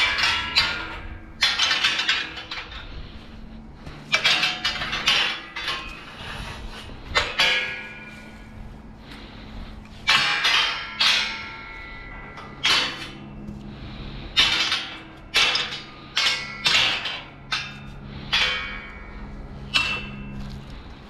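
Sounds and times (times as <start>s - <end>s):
sharp metallic clanks: 0.0s - 3.2s, 3.9s - 8.7s, 9.9s - 13.6s, 14.2s - 20.8s.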